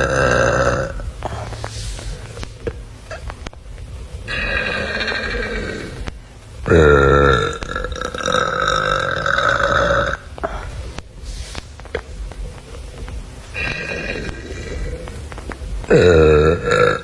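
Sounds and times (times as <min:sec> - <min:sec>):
woman burping: 0:00.0 - 0:01.1.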